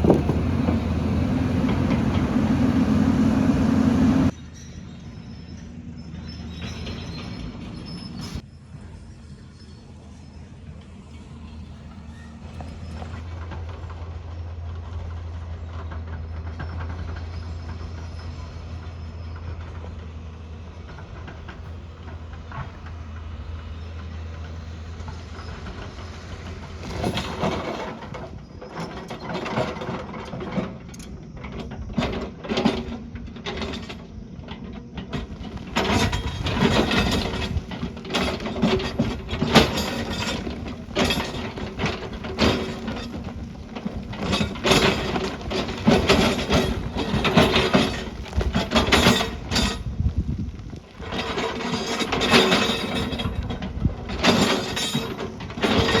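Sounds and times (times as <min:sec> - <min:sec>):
loud metal clanks and knocks: 0:00.0 - 0:04.3, 0:24.4 - 0:30.9, 0:35.0 - 0:50.0, 0:51.0 - 0:56.0
construction machine engine humming: 0:00.0 - 0:04.4, 0:09.3 - 0:28.1, 0:34.0 - 0:56.0.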